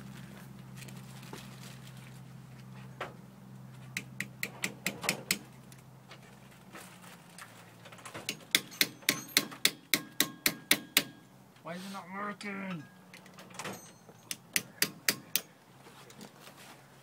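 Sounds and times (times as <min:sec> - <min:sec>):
hand tool tapping on metal: 0:04.0 - 0:05.4, 0:08.3 - 0:11.2, 0:14.1 - 0:15.5.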